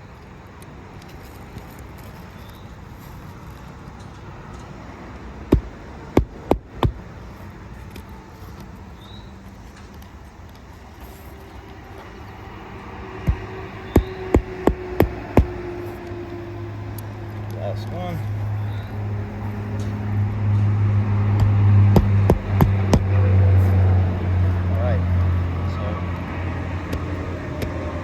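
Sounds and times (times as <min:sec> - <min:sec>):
low background rumble: 0:04.9 - 0:07.4, 0:11.5 - 0:25.9
hammer striking roofing nail: 0:05.5 - 0:07.1, 0:13.3 - 0:15.6, 0:21.3 - 0:23.2.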